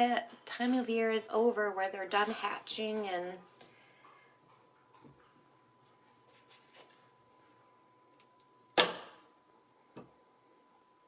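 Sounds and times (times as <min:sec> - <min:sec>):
faint steady hum: 0:00.0 - 0:11.0
sharp knock of hard object: 0:08.8 - 0:09.2.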